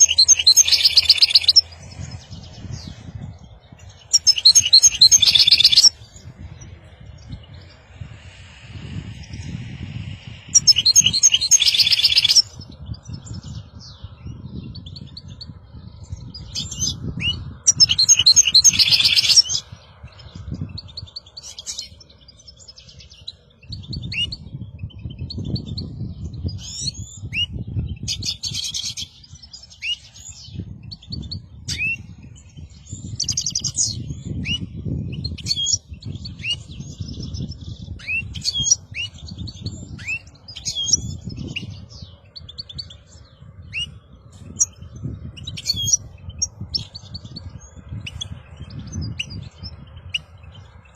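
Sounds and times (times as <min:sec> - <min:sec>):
finches twittering song: 0:00.0 - 0:50.9
low rumble: 0:05.9 - 0:11.3.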